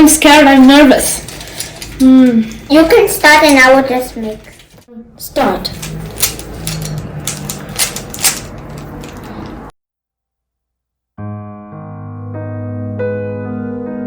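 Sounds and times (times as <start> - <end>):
soft electric piano music: 11.2 - 14.0.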